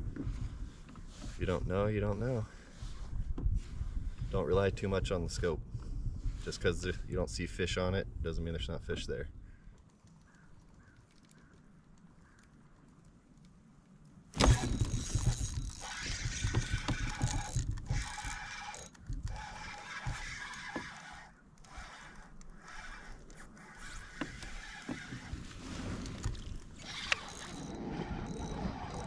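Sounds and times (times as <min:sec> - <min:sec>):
water rustling and splashing: 0:09.6 - 0:29.0.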